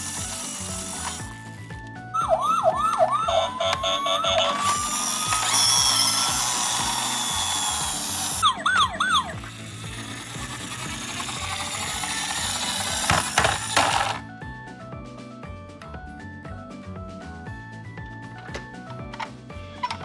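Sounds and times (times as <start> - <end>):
steady whirring hiss: 0.0 - 1.7
toy electronic siren wailing: 0.0 - 14.2, 18.4 - 20.0.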